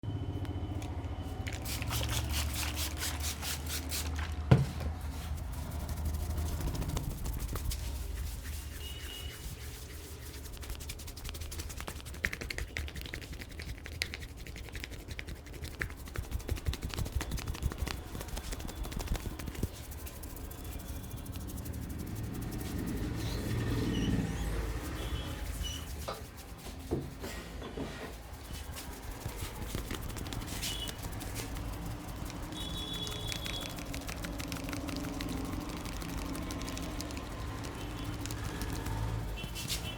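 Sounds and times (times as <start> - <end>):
hands tapping on skin: 10.5 - 20.0, 28.8 - 39.8.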